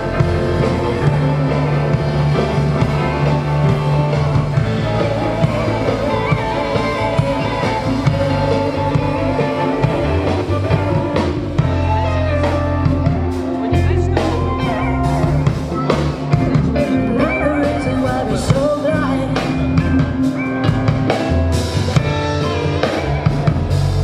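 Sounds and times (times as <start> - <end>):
bass notes: 0.0 - 24.0
electric guitar: 0.0 - 24.0
steady drum beat: 0.0 - 24.0.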